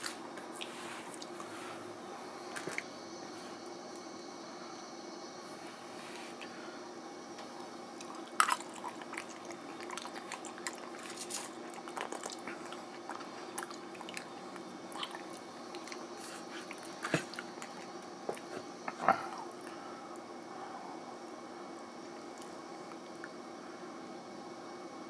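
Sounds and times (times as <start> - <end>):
steady low hum: 0.0 - 25.0
chewing and wet mouth noises: 7.4 - 19.8, 22.3 - 23.4.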